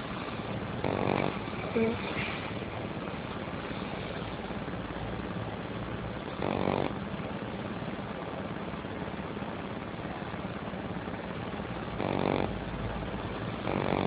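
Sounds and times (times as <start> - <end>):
microphone hiss: 0.0 - 14.0
man snoring: 0.8 - 1.9, 6.4 - 7.0, 12.0 - 12.6, 13.6 - 14.0.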